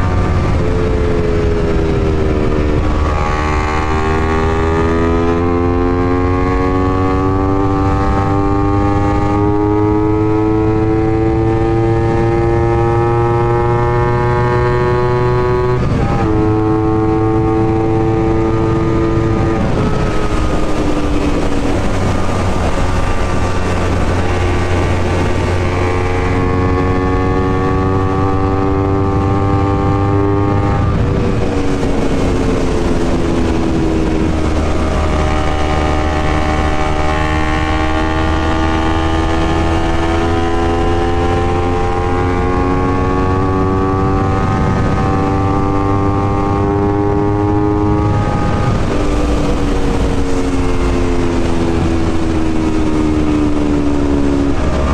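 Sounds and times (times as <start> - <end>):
motorcycle engine and exhaust: 0.0 - 54.9.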